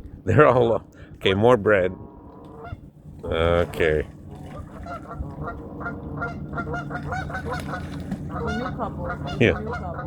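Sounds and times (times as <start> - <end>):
geese honking: 2.0 - 2.8, 3.6 - 10.0.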